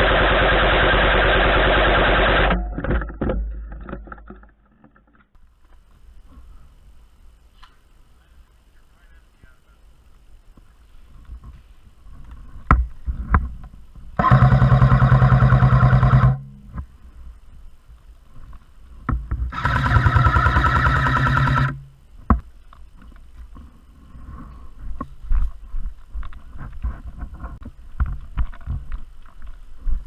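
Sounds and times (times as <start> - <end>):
airsoft machine gun full-auto bursts: 0.0 - 2.6, 14.2 - 16.4, 19.5 - 21.8.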